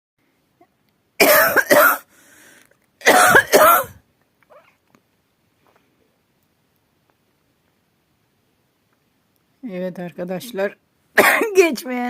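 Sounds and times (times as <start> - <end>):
person coughing: 1.2 - 2.1, 3.0 - 4.0, 11.2 - 11.6.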